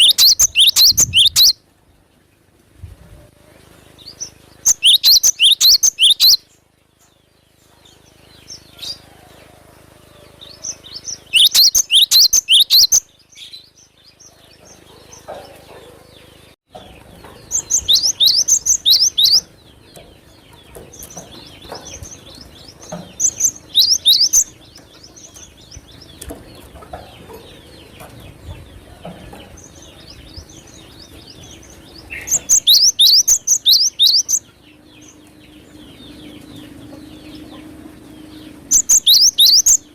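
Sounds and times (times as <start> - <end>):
bird song bursts of high notes: 0.0 - 1.6, 4.0 - 6.6, 10.6 - 13.8, 17.4 - 19.6, 30.8 - 39.9
faint bird chirps: 0.0 - 1.6, 3.4 - 7.1, 10.7 - 13.6.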